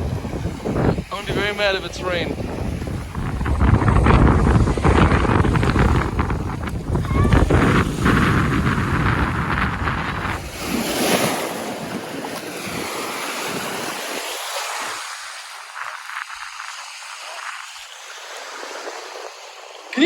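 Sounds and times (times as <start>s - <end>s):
wind buffeting microphone: 0.0s - 14.2s
surf breaking on beach: 0.0s - 20.0s.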